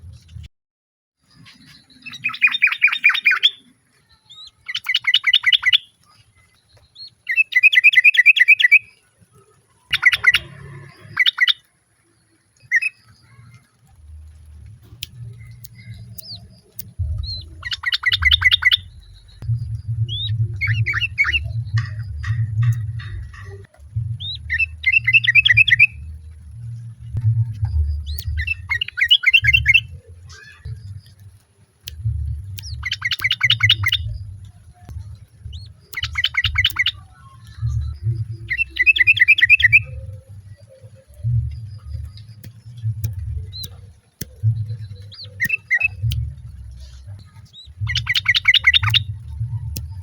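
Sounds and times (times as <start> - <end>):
bird chattering calls: 9.9 - 11.6, 15.1 - 19.4, 20.1 - 26.0, 32.6 - 34.4, 35.4 - 42.4, 43.5 - 50.0
steady low rumble: 13.2 - 50.0.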